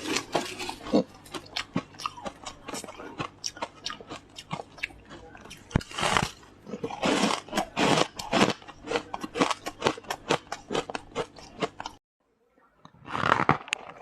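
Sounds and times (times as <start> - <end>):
ice being chewed: 0.0 - 12.0, 13.0 - 14.0.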